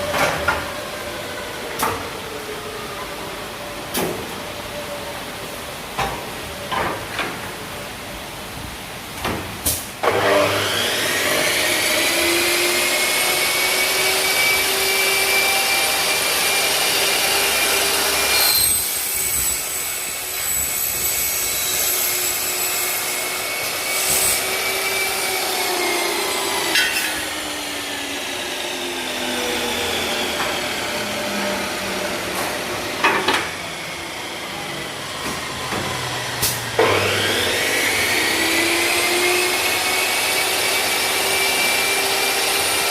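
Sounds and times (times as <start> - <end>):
cut-off saw whining: 10.0 - 42.9.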